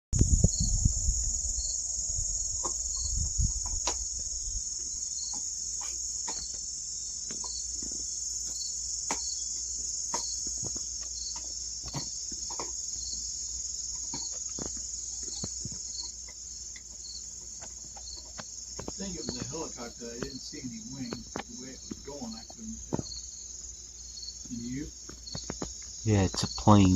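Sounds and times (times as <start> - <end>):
low rumble: 0.2 - 4.7
crickets chirping: 0.2 - 26.9.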